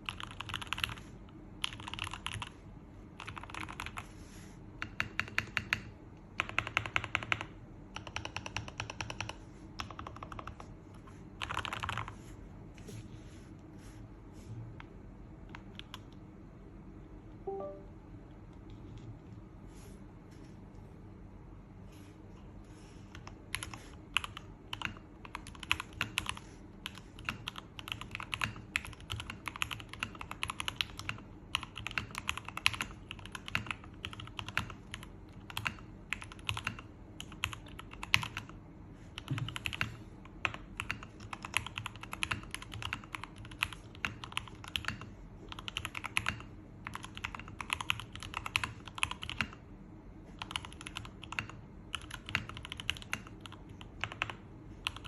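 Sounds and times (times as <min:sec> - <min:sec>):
mechanical keyboard typing: 0:00.0 - 0:02.6, 0:03.2 - 0:04.1, 0:04.8 - 0:10.7, 0:11.4 - 0:12.2, 0:15.5 - 0:16.2, 0:23.1 - 0:38.6, 0:39.2 - 0:49.6, 0:50.4 - 0:55.0.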